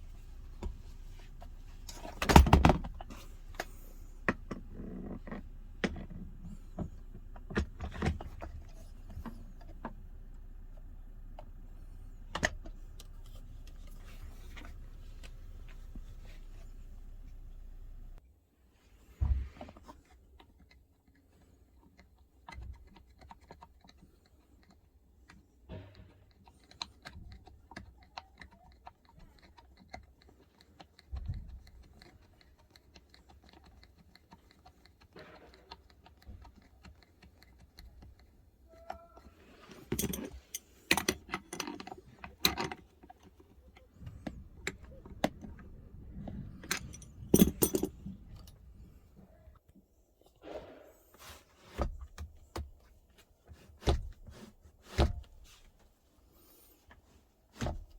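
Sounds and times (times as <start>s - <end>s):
hand tools clicking and knocking: 0.0s - 18.2s, 26.6s - 48.6s
metallic jingling of bolts: 39.8s - 41.8s, 46.2s - 48.6s.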